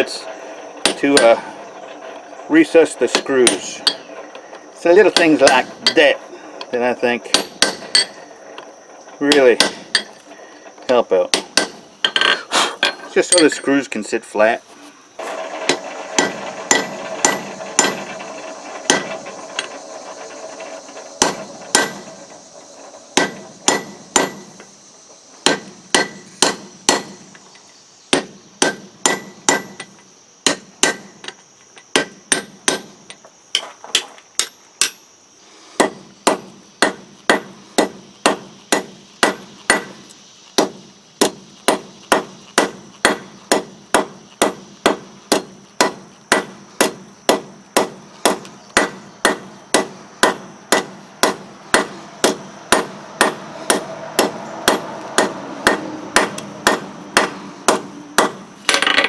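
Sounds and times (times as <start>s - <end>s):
hammer striking steel on anvil: 7.3s - 8.2s, 9.3s - 10.2s, 11.3s - 12.3s, 15.8s - 19.7s, 21.0s - 22.2s, 23.2s - 24.5s, 25.4s - 27.2s, 28.1s - 29.9s, 30.5s - 31.4s, 32.0s - 32.9s, 33.9s - 35.0s, 35.8s - 40.0s, 40.6s - 59.0s.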